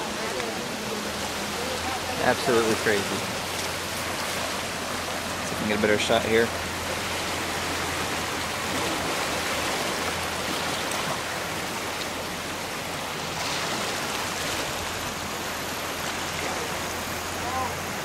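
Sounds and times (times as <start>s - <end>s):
rushing river water: 0.0s - 18.0s.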